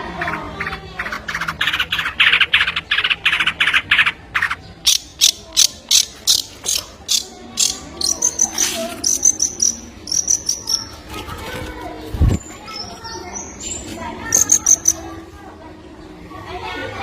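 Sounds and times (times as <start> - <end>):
bird calling with rasping notes: 0.3 - 11.1, 12.7 - 15.1.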